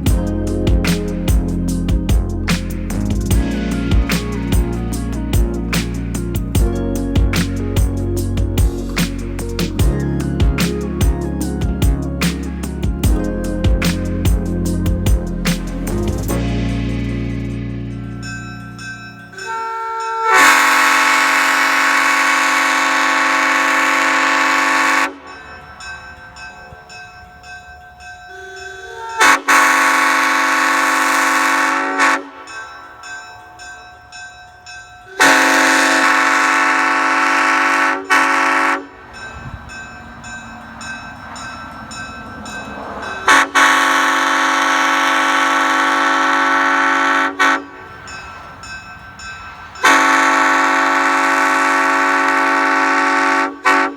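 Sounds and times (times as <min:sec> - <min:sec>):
locomotive air horn blasts: 0:19.3 - 0:25.2, 0:29.2 - 0:32.4, 0:35.1 - 0:39.0, 0:43.3 - 0:47.8, 0:49.8 - 0:53.9.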